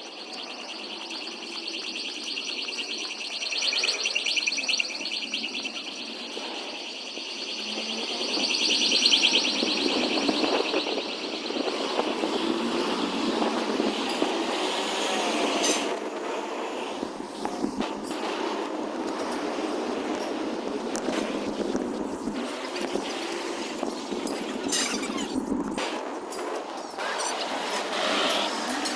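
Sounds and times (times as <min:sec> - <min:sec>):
rail wheels squealing: 0:00.0 - 0:20.5, 0:26.4 - 0:28.9
low rumble of tram: 0:00.0 - 0:28.9.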